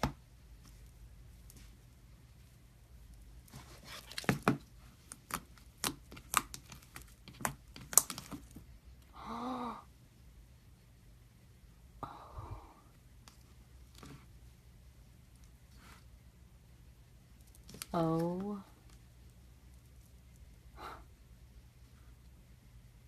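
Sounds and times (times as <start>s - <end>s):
slime crackling and popping: 4.1s - 8.6s
voice-like moan: 9.1s - 9.9s.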